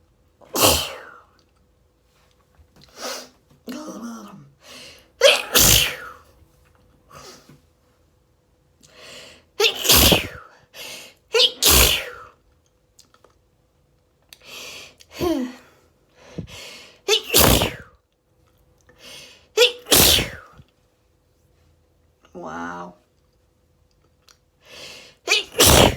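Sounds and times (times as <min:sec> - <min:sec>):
person sneezing: 0:00.4 - 0:01.3, 0:05.2 - 0:06.2, 0:09.6 - 0:10.6, 0:11.3 - 0:12.3, 0:15.1 - 0:15.7, 0:16.4 - 0:17.9, 0:19.6 - 0:20.6, 0:24.9 - 0:25.9.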